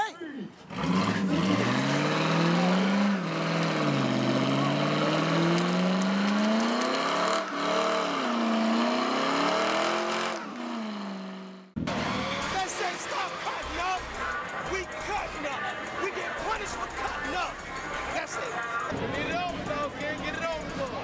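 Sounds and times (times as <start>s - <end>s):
car engine revving: 0.6s - 21.0s.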